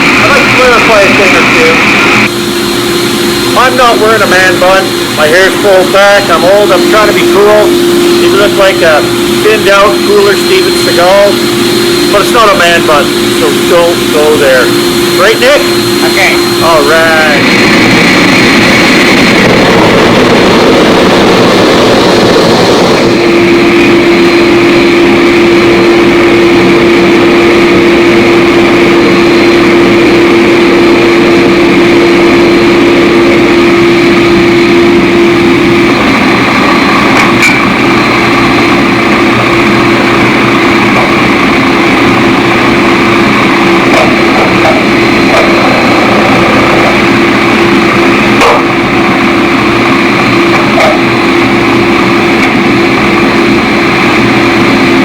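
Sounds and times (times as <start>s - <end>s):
burner and blower rush: 0.0s - 55.0s
constant hum: 0.0s - 55.0s.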